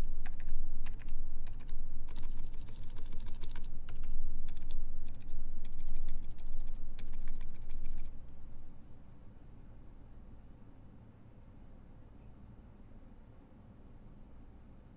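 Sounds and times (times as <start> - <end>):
quiet keyboard typing: 0.0 - 8.5.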